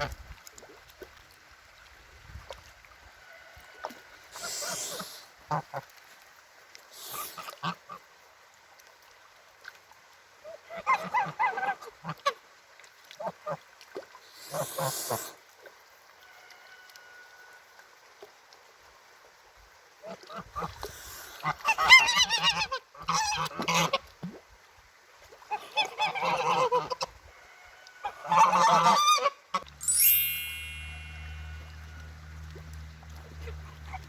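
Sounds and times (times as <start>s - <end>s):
goose honking: 28.2s - 29.6s
bright ringing falling in pitch: 29.8s - 32.6s.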